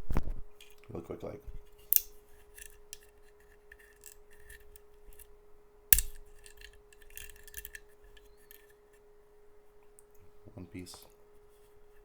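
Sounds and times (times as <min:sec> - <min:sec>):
plastic pieces clicking and tapping: 0:01.8 - 0:05.3, 0:06.0 - 0:08.7.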